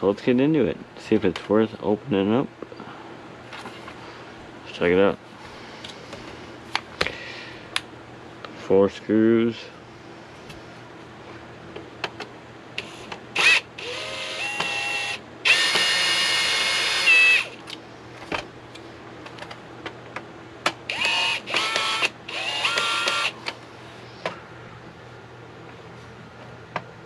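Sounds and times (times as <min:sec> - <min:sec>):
power drill motor whine: 0:12.8 - 0:17.6, 0:20.9 - 0:23.5.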